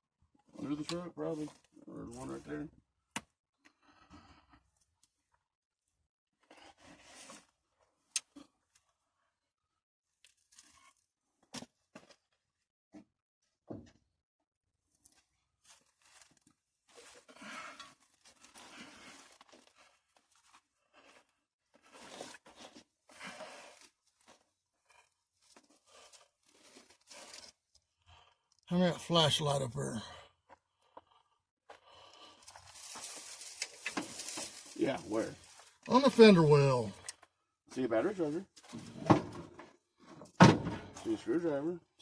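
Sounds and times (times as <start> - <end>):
scraping and rustling: 32.6 - 35.8.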